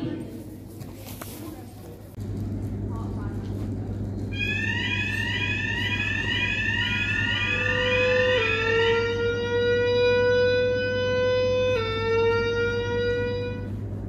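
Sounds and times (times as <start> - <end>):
steady alarm tone: 4.3 - 14.0
fire alarm rising sweep tone: 4.4 - 13.8.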